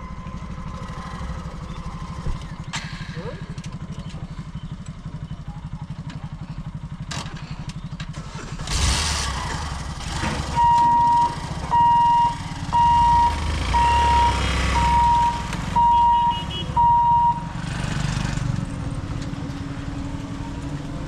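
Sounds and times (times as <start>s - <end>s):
level crossing warning beeps: 10.6s - 17.6s.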